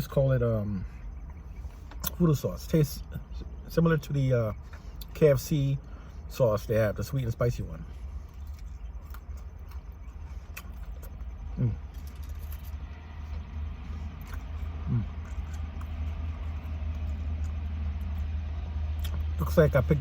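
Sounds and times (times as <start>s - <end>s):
vehicle engine rumbling: 0.0s - 20.0s
man humming: 11.6s - 11.8s, 14.8s - 15.2s.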